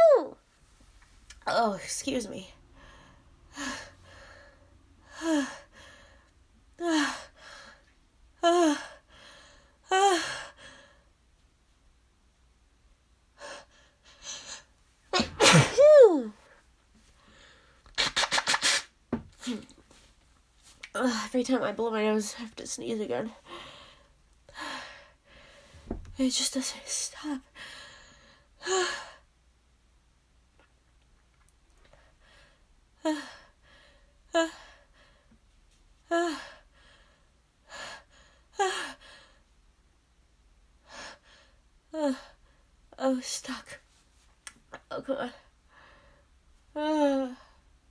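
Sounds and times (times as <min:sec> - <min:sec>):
woman sneezing: 0:15.1 - 0:16.3.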